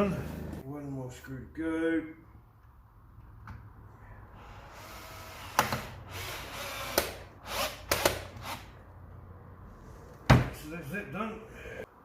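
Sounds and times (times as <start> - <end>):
power drill driving screw: 4.4 - 8.7.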